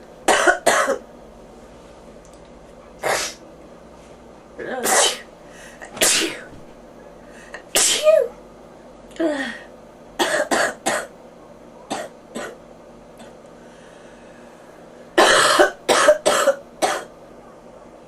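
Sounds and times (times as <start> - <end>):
person coughing: 0.3 - 1.0, 9.3 - 11.1, 11.9 - 12.6, 15.2 - 17.1.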